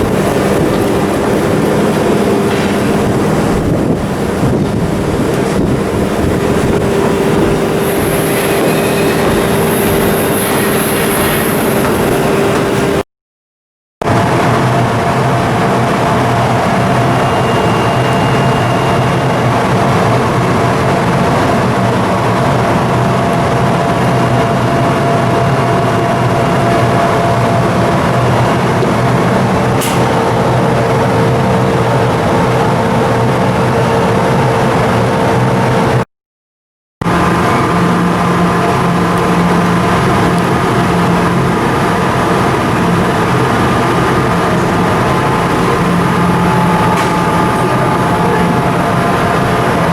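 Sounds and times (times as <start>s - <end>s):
ship diesel engine humming: 0.0s - 13.0s, 14.0s - 36.0s, 37.0s - 49.9s.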